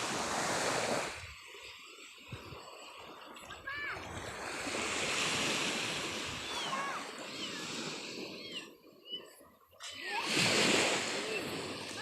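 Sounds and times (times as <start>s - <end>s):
surf washing onto beach: 0.0s - 1.5s, 3.1s - 8.5s, 9.9s - 12.0s.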